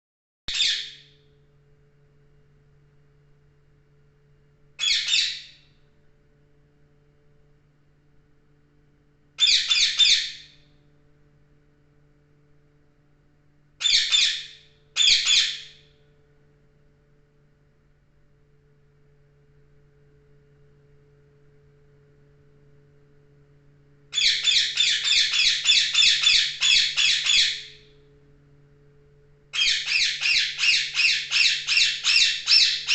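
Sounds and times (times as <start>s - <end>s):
parrot squawking: 0.5s - 1.0s, 4.8s - 5.6s, 9.4s - 10.5s, 13.8s - 15.8s, 24.2s - 27.8s, 29.6s - 32.9s.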